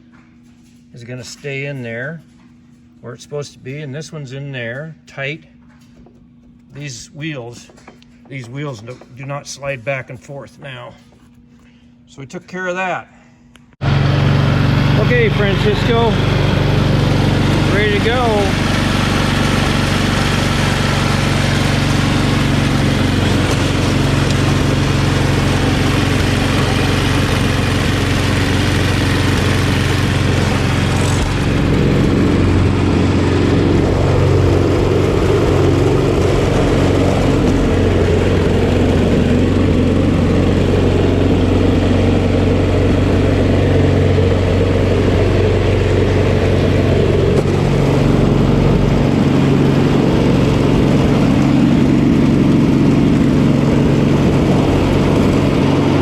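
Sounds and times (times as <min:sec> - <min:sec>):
snowblower engine running: 0:13.8 - 0:56.0.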